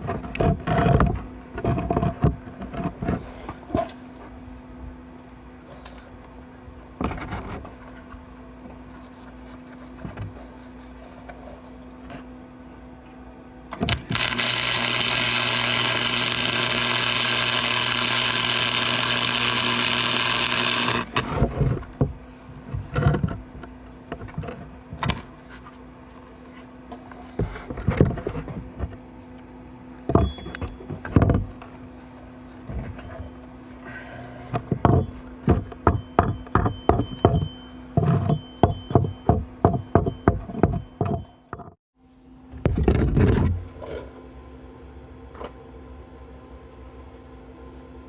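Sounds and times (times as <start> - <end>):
welding arc bursts: 13.8 - 21.5
steady hum: 13.8 - 21.6.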